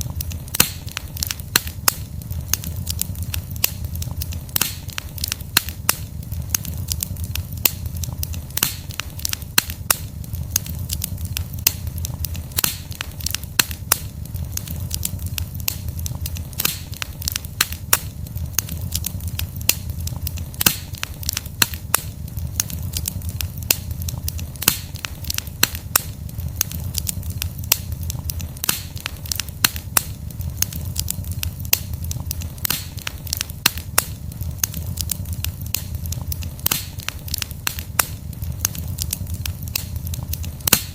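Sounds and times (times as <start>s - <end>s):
logs crackling and popping: 0.0s - 40.9s
low rumble of flames: 0.0s - 40.9s.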